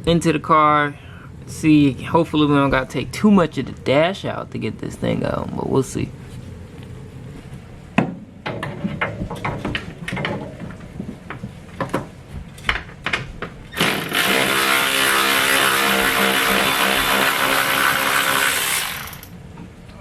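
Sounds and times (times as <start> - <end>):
power tool motor whining: 13.8 - 19.3.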